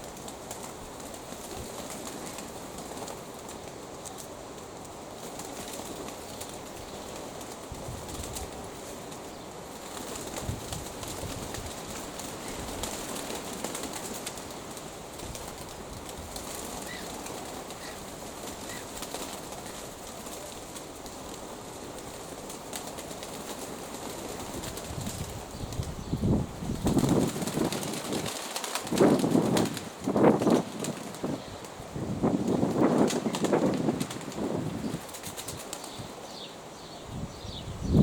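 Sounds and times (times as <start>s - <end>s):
wings flapping: 0.0s - 36.2s
pigeons cooing: 16.5s - 20.6s
wind buffeting microphone: 24.5s - 36.2s, 37.0s - 38.0s.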